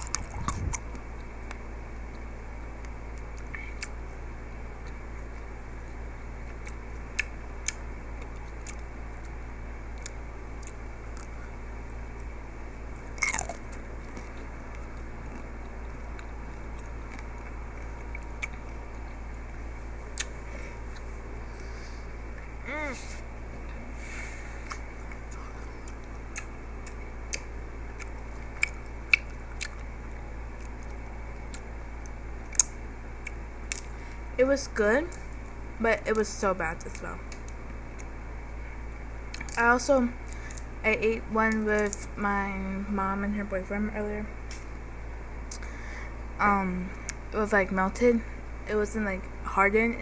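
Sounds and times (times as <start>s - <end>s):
steady low hum: 0.0s - 50.0s
chewing with small clicks: 2.8s - 4.0s, 4.8s - 11.4s, 13.0s - 19.3s, 24.6s - 29.9s, 30.5s - 33.9s, 36.9s - 38.2s, 38.9s - 39.6s, 45.5s - 45.7s.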